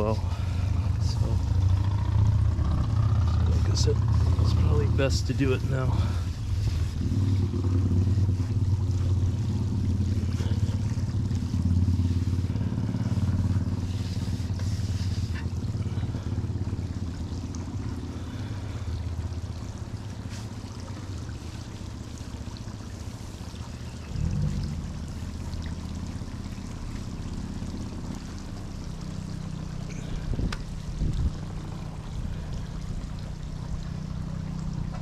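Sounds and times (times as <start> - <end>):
pressure washer engine running: 0.0 - 25.4
water spraying: 0.0 - 35.0.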